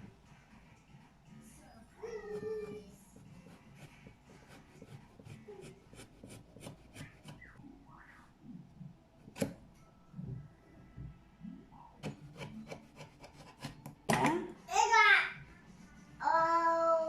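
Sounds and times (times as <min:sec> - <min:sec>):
faint rubbing and scraping: 0:00.0 - 0:09.4.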